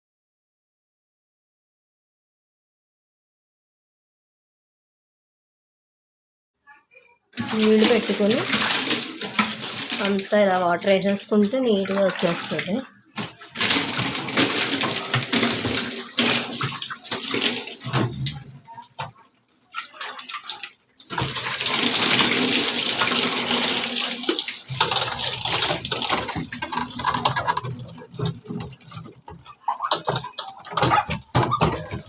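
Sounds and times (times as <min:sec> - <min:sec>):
water pouring and splashing: 0:07.4 - 0:32.0.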